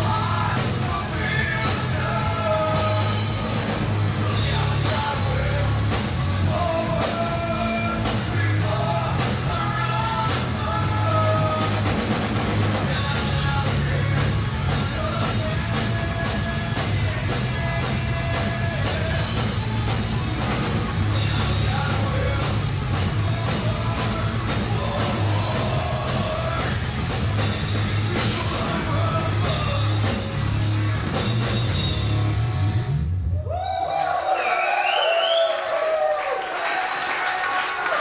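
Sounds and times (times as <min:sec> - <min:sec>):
metal band playing: 0:00.0 - 0:33.1
crowd cheering and whistling: 0:33.2 - 0:38.0.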